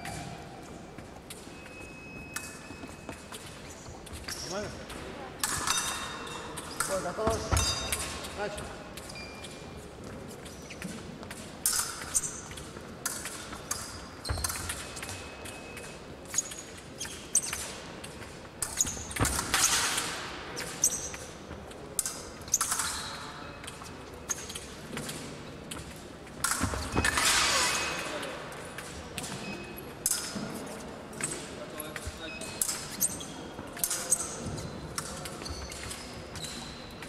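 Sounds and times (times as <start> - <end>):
footwork stamps and squeaks: 1.2 - 4.7, 5.6 - 12.6, 13.5 - 19.7, 26.5 - 27.4, 31.8 - 37.0
fencing blades clinking: 1.3 - 9.7, 10.4 - 21.4, 22.0 - 30.6, 31.2 - 36.6.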